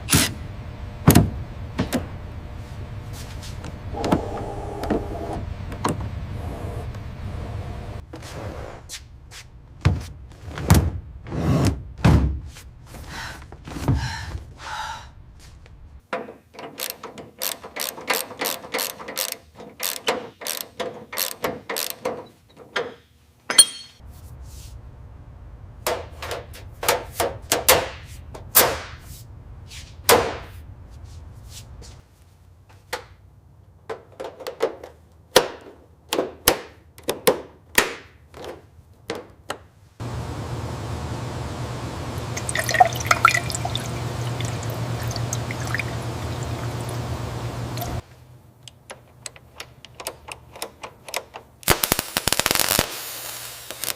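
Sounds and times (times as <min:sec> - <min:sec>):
ratchet clicking: 0:16.8 - 0:22.0.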